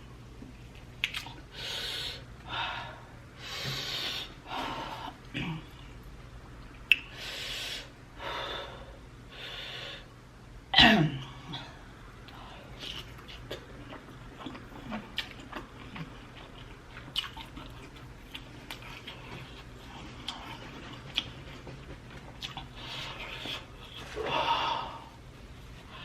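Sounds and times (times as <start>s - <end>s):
person breathing hard: 1.5s - 5.2s, 7.1s - 10.1s, 24.2s - 25.2s.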